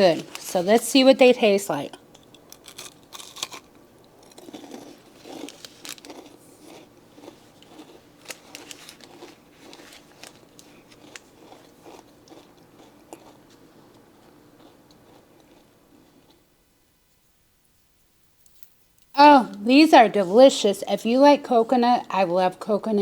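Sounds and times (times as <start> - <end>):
crunchy chewing: 2.2 - 16.4.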